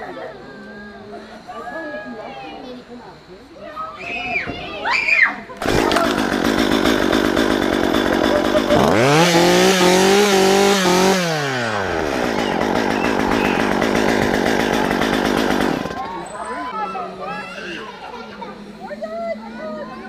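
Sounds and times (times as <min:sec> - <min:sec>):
chainsaw engine revving and idling: 0:05.6 - 0:16.1.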